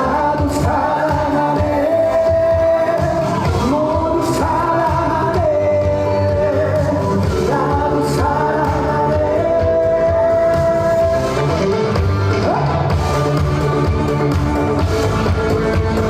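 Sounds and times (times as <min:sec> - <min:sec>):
man singing: 0:00.0 - 0:13.0
backing track with steady beat: 0:00.0 - 0:16.0.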